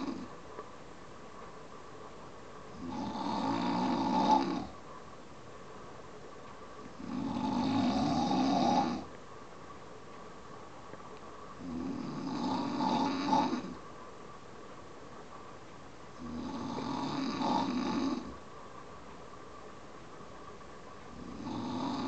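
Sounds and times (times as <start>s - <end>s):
person snoring: 0.0s - 0.3s, 2.8s - 4.8s, 7.0s - 9.1s, 11.6s - 13.8s, 16.2s - 18.4s, 21.2s - 22.0s.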